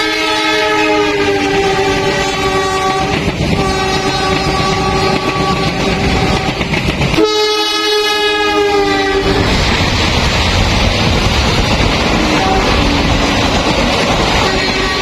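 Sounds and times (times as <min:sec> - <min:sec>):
train horn blast: 0:00.0 - 0:06.6, 0:07.2 - 0:09.5, 0:12.2 - 0:13.1, 0:14.4 - 0:15.0
passing train rumbling: 0:00.0 - 0:15.0.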